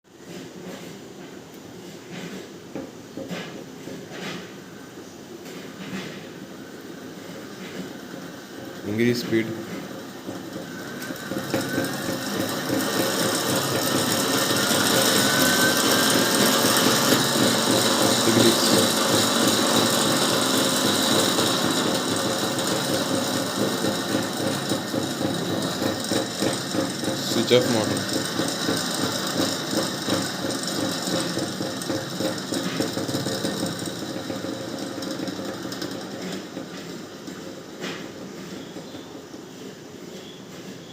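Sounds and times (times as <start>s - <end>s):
electric motor whirring: 8.9s - 35.9s.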